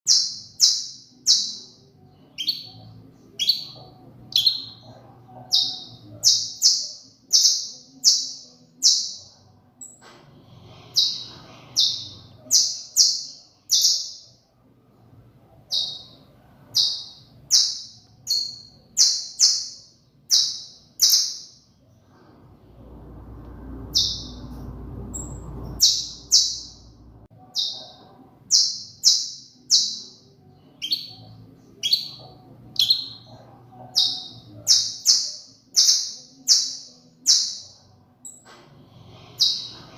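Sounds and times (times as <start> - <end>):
low rushing noise: 21.9 - 27.3.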